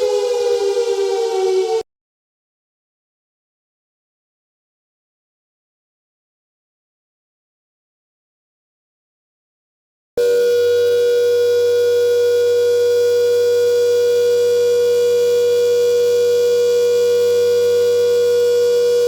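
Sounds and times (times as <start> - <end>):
air raid siren steady tone: 0.0 - 1.9, 10.2 - 19.0.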